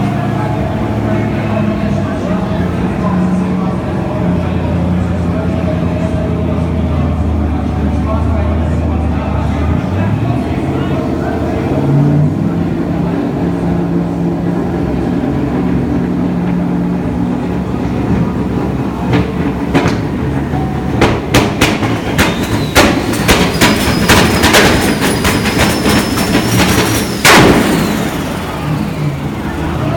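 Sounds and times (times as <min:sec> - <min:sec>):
car engine rumbling: 0:00.0 - 0:29.9
exhaust pops and bangs: 0:19.0 - 0:20.3, 0:21.0 - 0:28.4
high whistle: 0:22.2 - 0:27.3.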